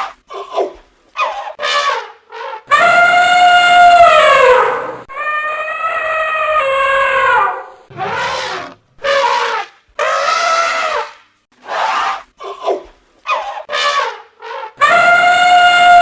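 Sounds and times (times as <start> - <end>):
elephant trumpeting: 2.4 - 11.0, 14.8 - 16.0.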